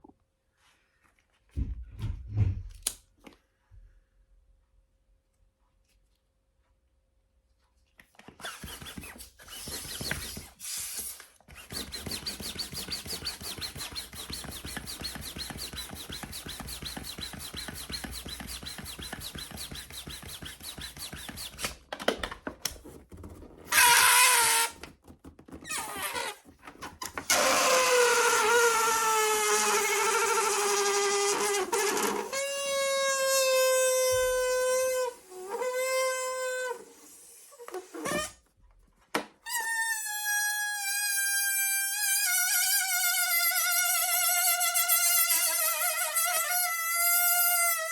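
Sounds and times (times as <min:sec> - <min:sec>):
balloon air squealing: 0:08.4 - 0:21.8, 0:23.2 - 0:25.0, 0:25.6 - 0:38.4, 0:39.4 - 0:47.9
air hissing into balloon: 0:08.5 - 0:21.6, 0:27.3 - 0:38.4.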